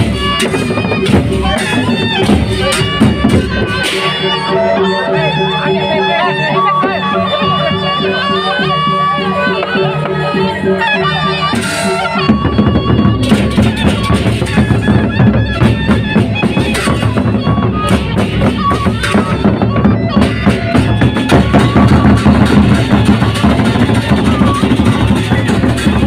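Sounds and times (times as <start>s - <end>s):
big drums: 0.0s - 5.4s, 11.4s - 26.0s
sustained pitched melody: 0.0s - 26.0s.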